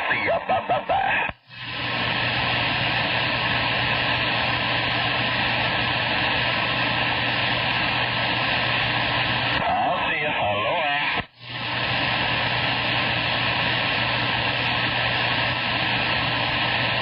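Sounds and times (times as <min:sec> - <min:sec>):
voice over radio: 0:00.0 - 0:01.4, 0:09.6 - 0:11.3
radio static hiss: 0:00.0 - 0:17.0.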